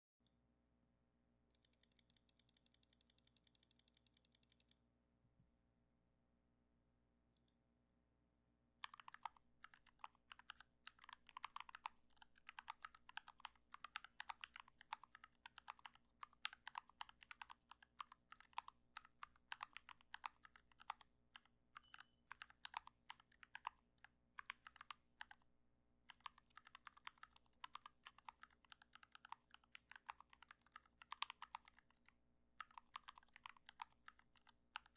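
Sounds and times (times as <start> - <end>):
fast even ticking: 1.6 - 4.8
typing on mechanical keyboard: 1.6 - 4.8, 8.8 - 25.4, 26.1 - 34.9.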